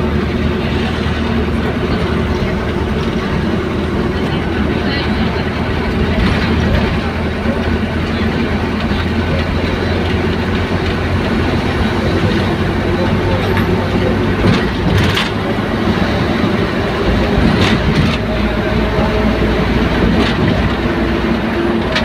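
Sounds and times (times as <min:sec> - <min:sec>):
vehicle rumbling: 0:00.0 - 0:22.0.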